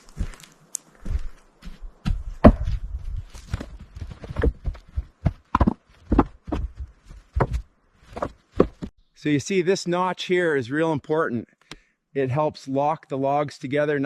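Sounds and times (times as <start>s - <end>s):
thuds and knocks: 2.0s - 8.9s.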